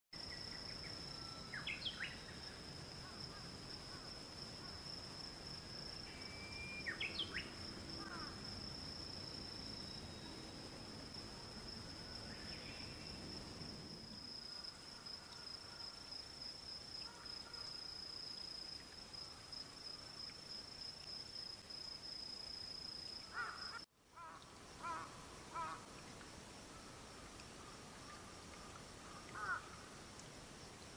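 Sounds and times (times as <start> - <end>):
insect trilling: 5.8 - 13.7, 22.3 - 25.9, 28.0 - 29.8.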